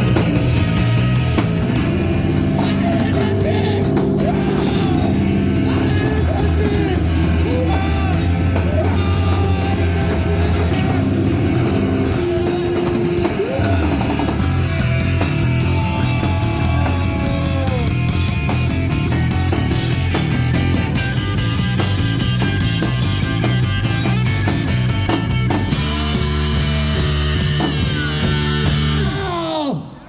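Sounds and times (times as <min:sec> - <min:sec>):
bass guitar: 0:00.0 - 0:29.5
distorted electric guitars: 0:00.0 - 0:29.5
drum kit: 0:00.0 - 0:29.5
person singing: 0:02.0 - 0:18.3, 0:25.7 - 0:30.0.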